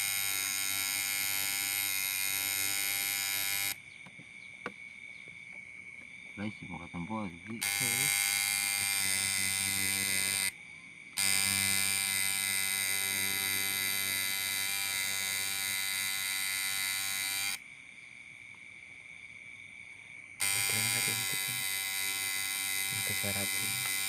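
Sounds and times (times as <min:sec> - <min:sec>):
tattoo machine buzzing: 0:00.0 - 0:03.8, 0:07.5 - 0:10.6, 0:11.2 - 0:17.6, 0:20.4 - 0:24.0.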